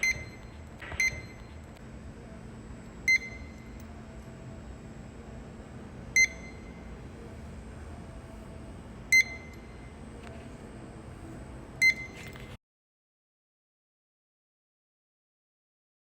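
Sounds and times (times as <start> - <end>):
steady background hum: 0.0 - 12.6.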